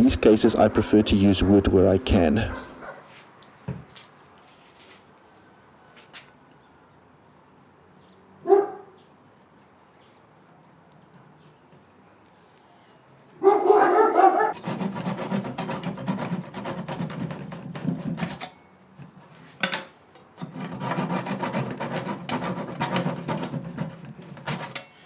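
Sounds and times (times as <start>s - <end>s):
hand tool rasping wood: 14.6s - 19.3s, 20.4s - 25.0s.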